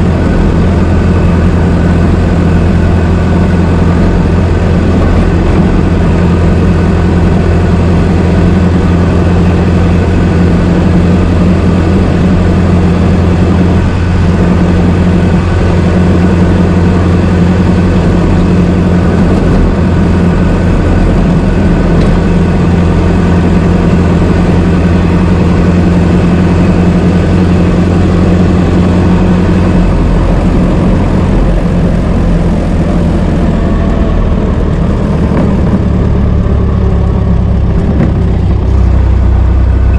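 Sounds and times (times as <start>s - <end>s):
car engine idling: 0.0s - 39.9s.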